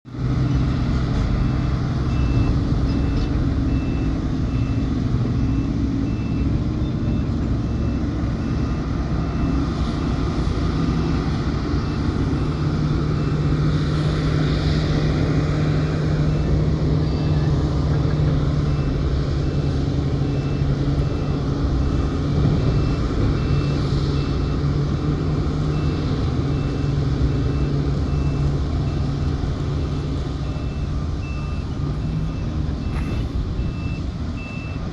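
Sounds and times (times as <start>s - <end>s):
heavy diesel engines droning: 0.1s - 34.9s
reversing alarm beeping: 1.4s - 10.3s, 15.7s - 17.7s, 18.6s - 24.7s, 25.7s - 34.9s.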